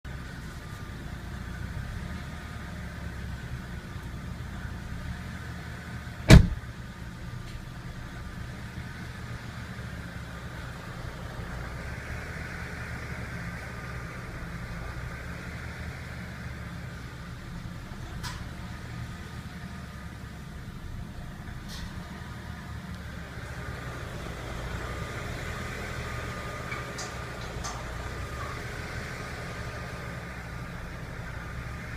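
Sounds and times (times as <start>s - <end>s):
sharp knock: 6.3s - 6.6s.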